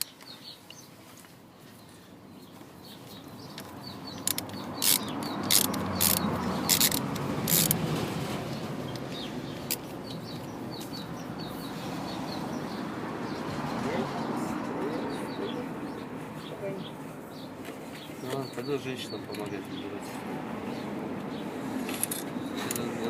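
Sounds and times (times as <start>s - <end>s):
small birds chirping: 0.0s - 23.0s
sharp clicks: 3.5s - 7.8s.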